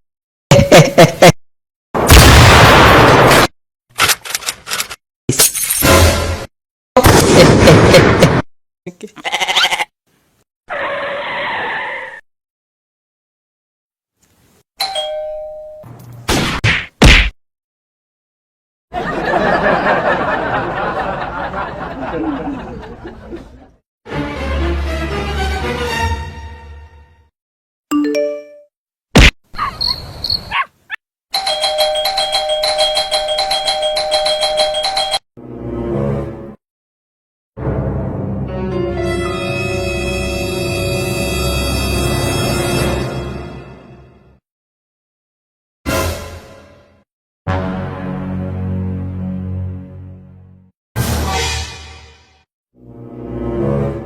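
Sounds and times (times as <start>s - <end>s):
music: 24.1s - 27.3s, 35.4s - 36.6s, 37.6s - 44.4s, 45.9s - 54.0s.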